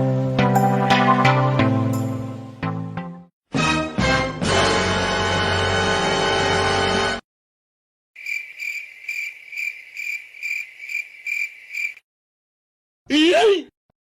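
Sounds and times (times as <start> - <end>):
music clip: 0.0 - 7.2
cricket chirping: 8.2 - 12.0.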